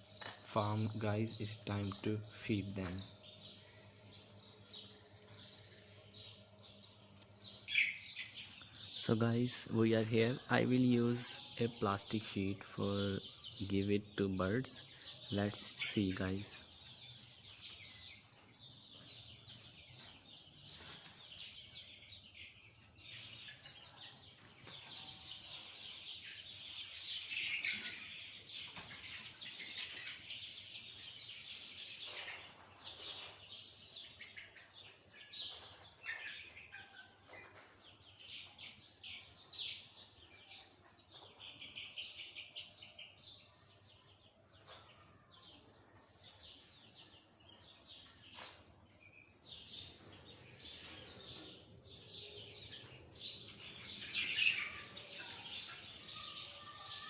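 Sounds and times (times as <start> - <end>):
chicks chirping and peeping: 0.0 - 57.0.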